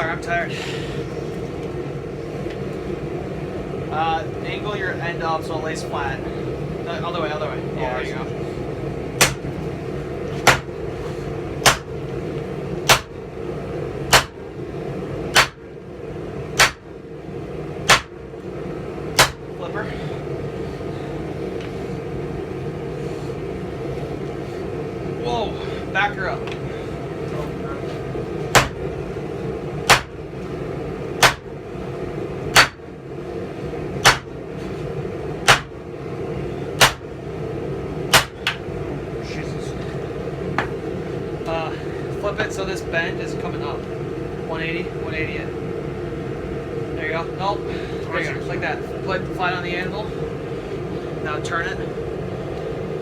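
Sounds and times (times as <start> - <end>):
steady hum: 0.0 - 53.0
hammer striking steel on anvil: 19.2 - 19.4.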